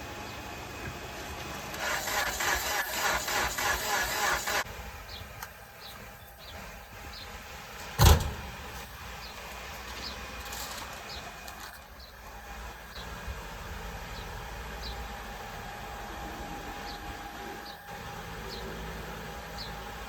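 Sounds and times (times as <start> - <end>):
loud thump: 8.0 - 8.5.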